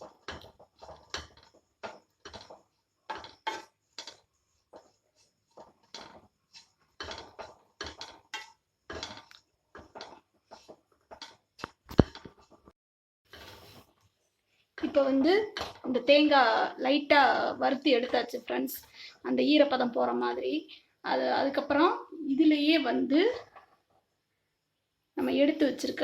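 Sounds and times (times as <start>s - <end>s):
spatula scraping in a pan: 0.0s - 12.7s, 13.3s - 16.8s.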